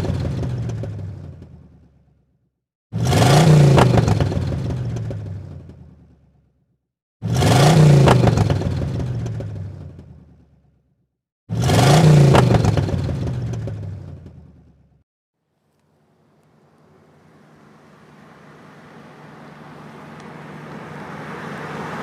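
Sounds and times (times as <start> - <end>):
car engine revving: 3.0 - 5.8, 7.2 - 10.0, 11.5 - 14.4, 16.7 - 22.0.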